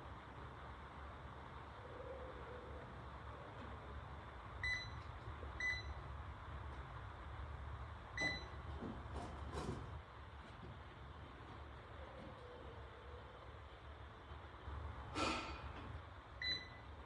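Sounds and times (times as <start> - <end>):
steady low hum: 0.0 - 17.0
short electronic beeps: 16.4 - 16.8.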